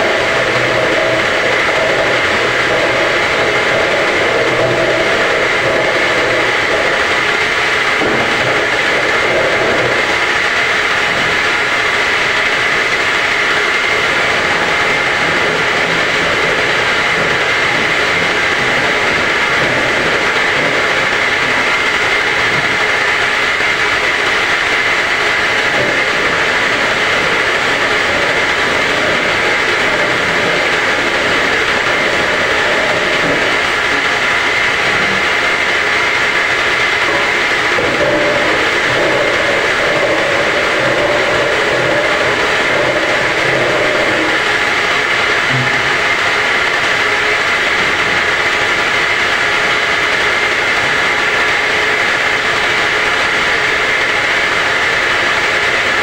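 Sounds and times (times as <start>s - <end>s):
washing machine running: 0.0s - 56.0s.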